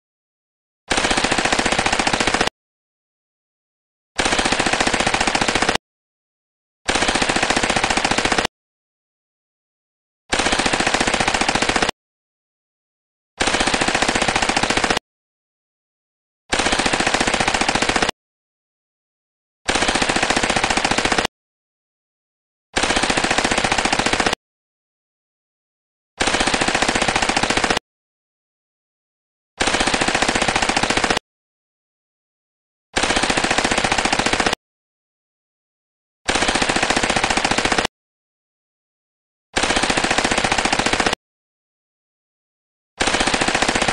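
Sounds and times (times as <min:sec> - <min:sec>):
submachine gun automatic fire: 0:00.9 - 0:02.5, 0:04.2 - 0:05.8, 0:06.9 - 0:08.5, 0:10.3 - 0:12.0, 0:13.4 - 0:15.0, 0:16.5 - 0:18.2, 0:19.7 - 0:21.3, 0:22.8 - 0:24.4, 0:26.2 - 0:27.8, 0:29.6 - 0:31.2, 0:33.0 - 0:34.6, 0:36.3 - 0:37.9, 0:39.6 - 0:41.2, 0:43.0 - 0:43.9.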